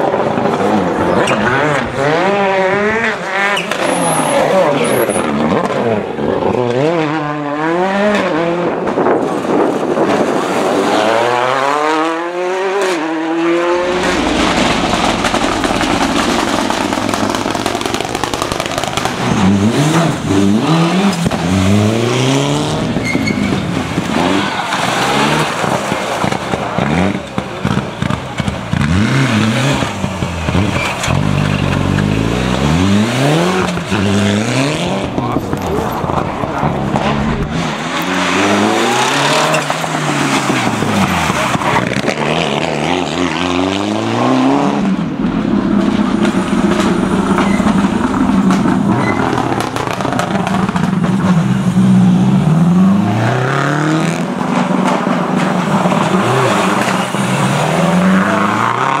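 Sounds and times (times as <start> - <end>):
rally car engines revving: 0.0 - 59.0.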